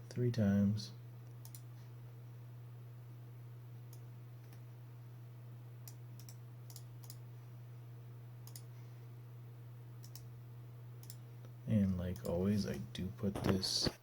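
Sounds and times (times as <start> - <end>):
low electrical hum: 0.0 - 14.0
computer mouse clicks: 1.3 - 1.7, 5.8 - 7.2, 8.4 - 8.7, 10.0 - 10.3, 11.0 - 11.2.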